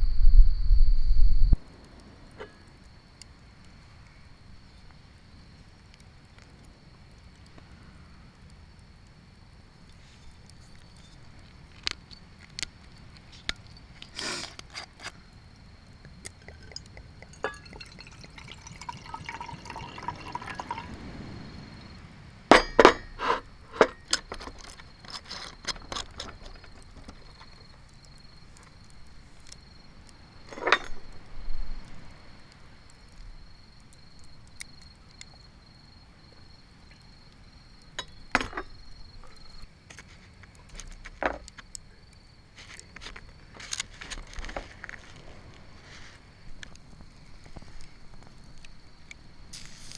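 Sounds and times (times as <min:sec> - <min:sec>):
glass clinks and knocks: 0:16.4 - 0:20.9, 0:22.5 - 0:23.1
liquid pouring into a glass: 0:16.4 - 0:21.0.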